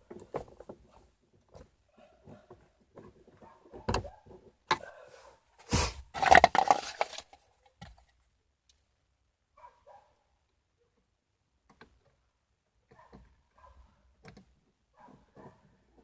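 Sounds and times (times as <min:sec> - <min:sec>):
clatter and scrape: 0:04.7 - 0:08.0.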